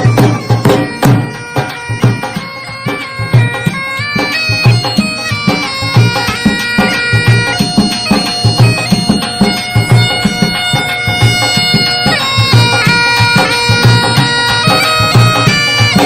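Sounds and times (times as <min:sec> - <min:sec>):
reedy wind instrument melody: 0:00.0 - 0:16.0
steady drum beat: 0:00.0 - 0:16.0.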